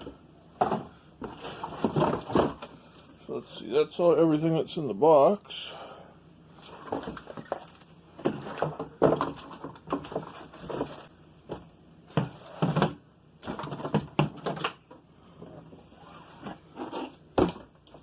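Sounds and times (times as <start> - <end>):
packaging rustling and scraping: 0.6 - 3.1, 6.7 - 14.0.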